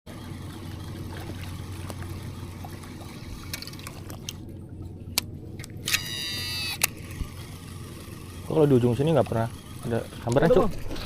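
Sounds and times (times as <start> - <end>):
low hum: 0.1 - 11.0
faint trickling water: 0.2 - 4.9.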